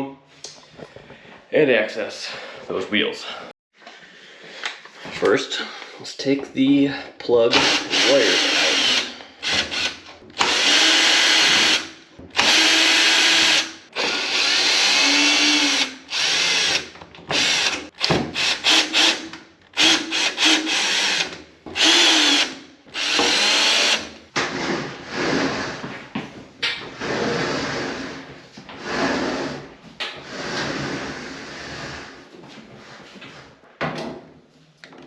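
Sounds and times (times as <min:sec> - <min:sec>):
cordless drill bursts: 0:07.5 - 0:19.2, 0:19.8 - 0:24.1.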